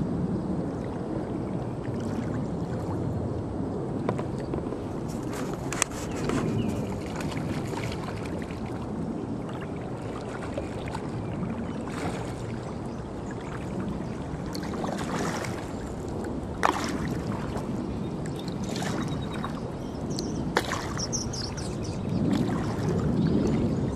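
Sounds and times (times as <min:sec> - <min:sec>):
paddle strokes splashing: 0:00.8 - 0:03.0, 0:04.0 - 0:23.9
water wash: 0:00.9 - 0:19.8.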